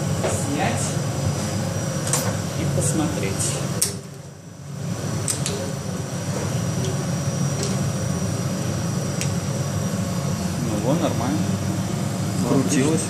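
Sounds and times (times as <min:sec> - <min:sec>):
low machine hum: 0:00.0 - 0:13.0.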